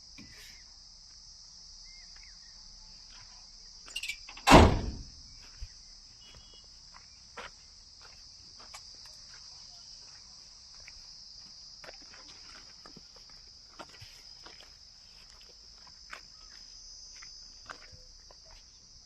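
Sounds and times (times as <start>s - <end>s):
insects chirring: 0.0s - 19.0s
loud thump: 4.4s - 5.2s.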